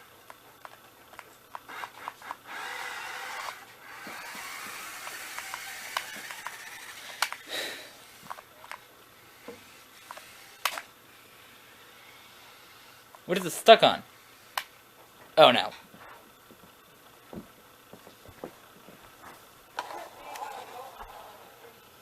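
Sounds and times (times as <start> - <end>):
toy cars scraping on floor: 1.7 - 13.0.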